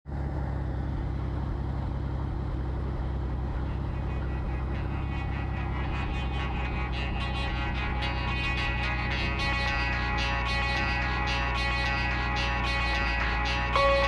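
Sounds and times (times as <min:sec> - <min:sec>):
helicopter drone: 0:00.1 - 0:14.0
higher tones: 0:03.5 - 0:14.0.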